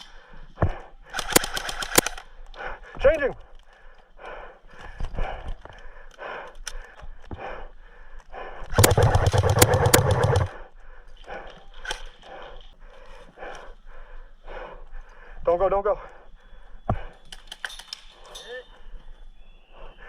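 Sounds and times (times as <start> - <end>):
airsoft gun full-auto burst: 1.1 - 2.3, 8.7 - 10.6.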